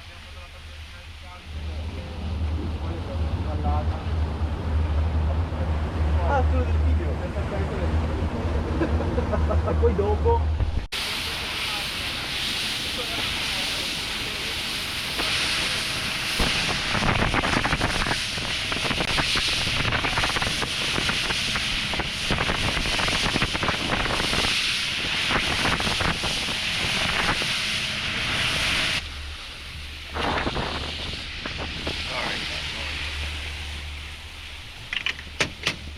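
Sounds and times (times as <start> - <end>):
boat engine rushing: 0.0 - 35.9
water rushing: 0.0 - 35.9
wind buffeting microphone: 14.7 - 35.9.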